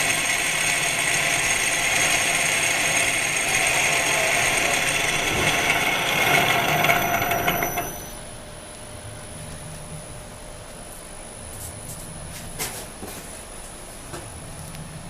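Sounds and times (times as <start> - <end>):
milling machine cutting metal: 0.0 - 8.2
milling machine running: 0.0 - 8.2.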